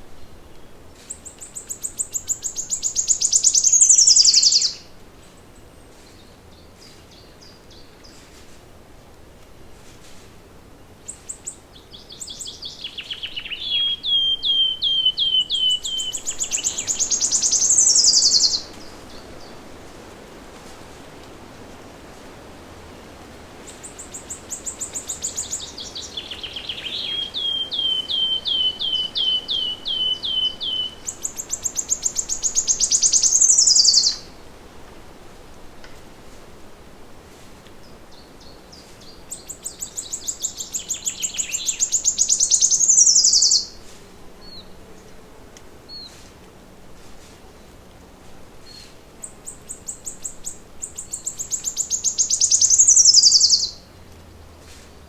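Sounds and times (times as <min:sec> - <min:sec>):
faint outdoor hiss: 0:00.0 - 0:55.0
songbird singing with trill: 0:00.1 - 0:04.9, 0:11.1 - 0:19.6, 0:23.7 - 0:34.3, 0:37.8 - 0:43.8, 0:48.6 - 0:53.9.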